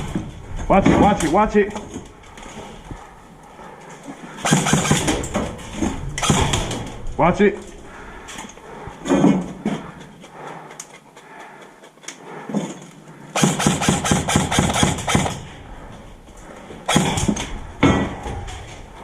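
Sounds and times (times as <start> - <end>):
airsoft gun automatic burst: 4.4 - 5.3, 13.4 - 15.4.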